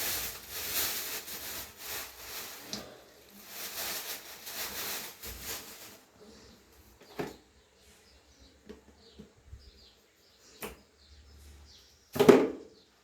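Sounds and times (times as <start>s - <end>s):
kitchen knocks and clunks: 7.0s - 7.4s, 12.1s - 12.7s.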